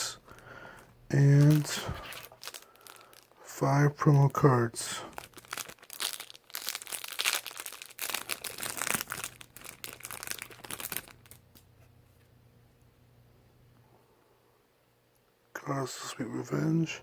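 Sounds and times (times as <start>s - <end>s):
crinkly packaging rustling: 0.0s - 11.9s.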